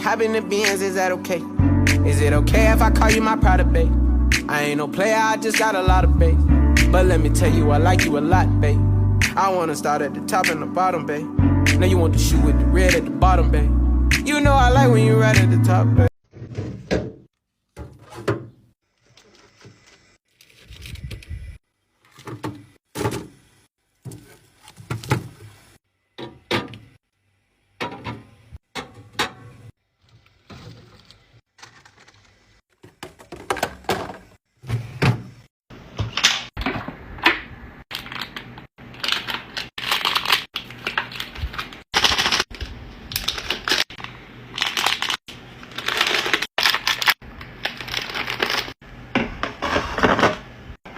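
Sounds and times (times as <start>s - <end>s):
plastic and cardboard packages clacking: 28.8s - 34.4s, 37.9s - 48.8s
wrappers crinkling: 37.9s - 48.8s.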